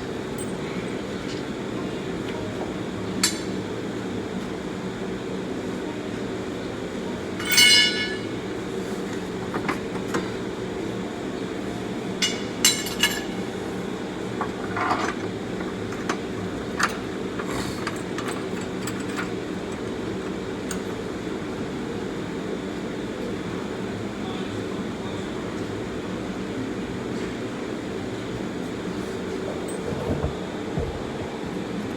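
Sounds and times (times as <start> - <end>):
metal tools clinking: 7.4 - 8.2
steady low hum: 27.5 - 31.9.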